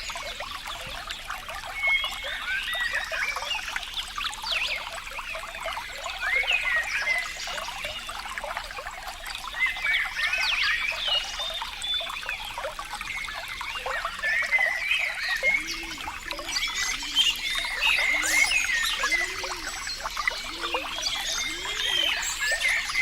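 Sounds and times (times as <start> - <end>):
deeper water gurgles: 0.0 - 23.0
water trickling and gurgling: 0.0 - 23.0.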